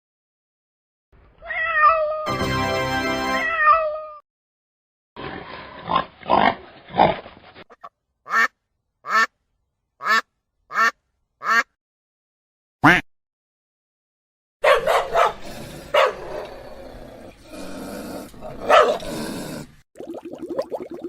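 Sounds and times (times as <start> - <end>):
cat meowing: 1.4 - 2.3, 3.4 - 4.2.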